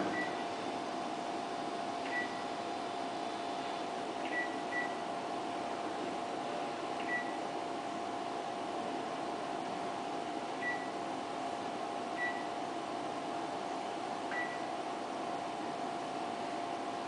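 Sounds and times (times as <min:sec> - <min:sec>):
ultrasound scanner hum: 0:00.0 - 0:05.8.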